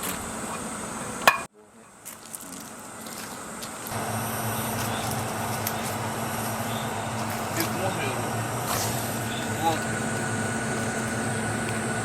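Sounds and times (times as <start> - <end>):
low mechanical hum: 0.0 - 12.0.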